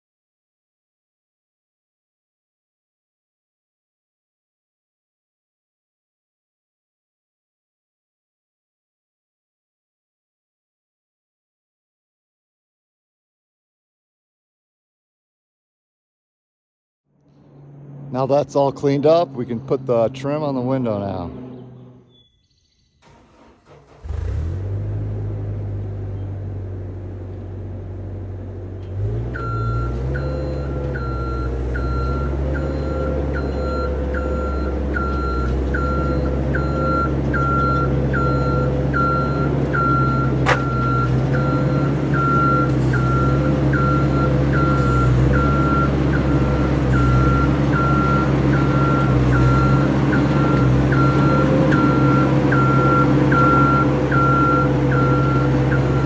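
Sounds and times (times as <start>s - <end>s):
vehicle engine running: 17.1s - 22.2s, 23.1s - 56.0s
back-up alarm beeping: 29.4s - 56.0s.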